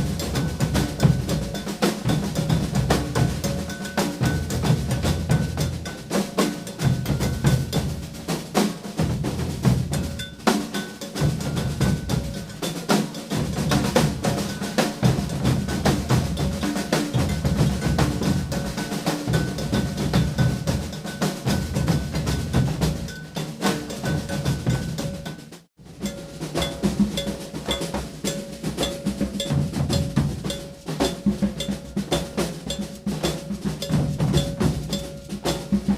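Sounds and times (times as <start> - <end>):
snare drum strokes and rolls: 0.0 - 35.9
metal bell ringing: 0.1 - 7.9, 9.9 - 25.4, 26.0 - 35.9
deep bass drums: 2.2 - 6.0, 9.0 - 10.4, 11.2 - 12.6, 13.4 - 23.1.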